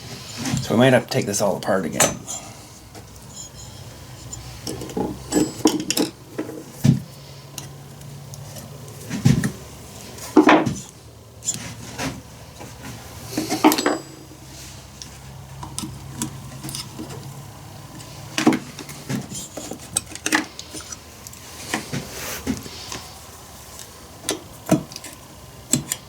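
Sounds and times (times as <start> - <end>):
metal parts clinking and knocking: 3.2 - 6.2, 13.4 - 14.3.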